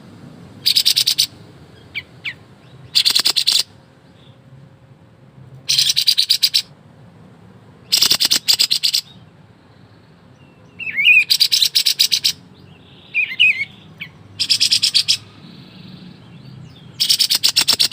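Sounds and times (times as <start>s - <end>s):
bird warbled whistles: 0.6s - 1.3s, 2.0s - 3.7s, 5.7s - 6.7s, 7.9s - 9.2s, 10.8s - 15.3s, 17.0s - 17.9s
bird rattling song volleys: 0.6s - 4.4s, 5.6s - 6.7s, 7.8s - 10.1s, 10.8s - 17.9s.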